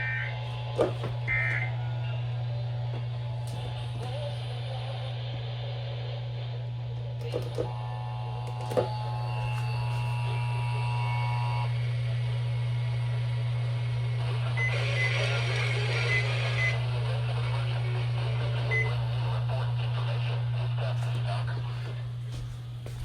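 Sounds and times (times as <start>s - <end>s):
loud steady hum: 0.0s - 23.0s
radio hiss: 14.1s - 22.1s.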